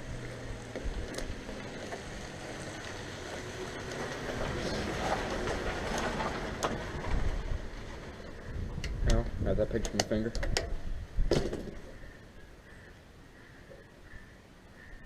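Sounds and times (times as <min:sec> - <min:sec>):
wind buffeting microphone: 0:06.8 - 0:12.0.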